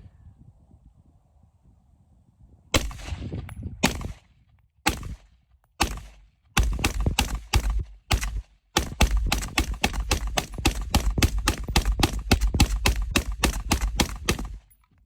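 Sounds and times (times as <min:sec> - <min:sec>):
gunshots: 0:02.8 - 0:04.3, 0:04.9 - 0:14.7.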